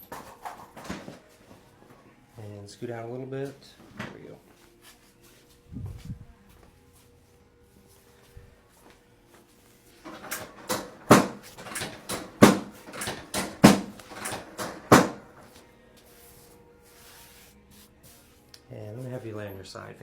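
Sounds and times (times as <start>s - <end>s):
sharp knocks and cracks: 10.1s - 15.5s.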